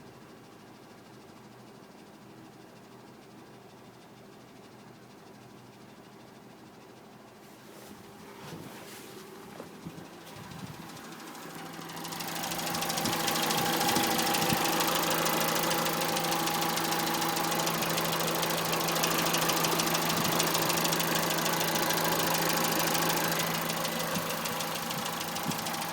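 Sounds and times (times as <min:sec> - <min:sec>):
car engine idling: 0:07.6 - 0:25.9
rapid engine tapping: 0:08.0 - 0:25.9.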